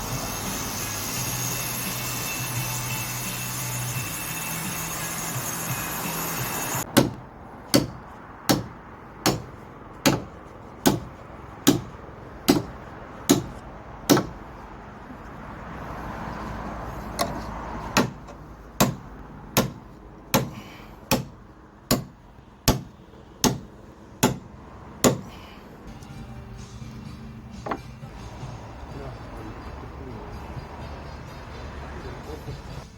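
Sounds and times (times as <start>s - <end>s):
hammer blows: 17.2s - 26.1s.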